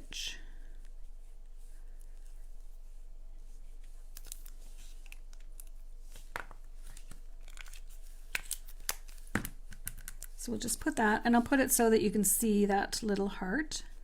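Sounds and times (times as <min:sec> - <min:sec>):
paper rustling: 0:03.4 - 0:10.4.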